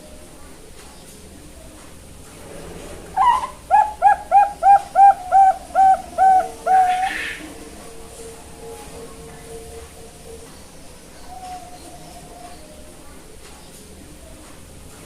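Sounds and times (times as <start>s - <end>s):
dove cooing: 2.8s - 13.2s.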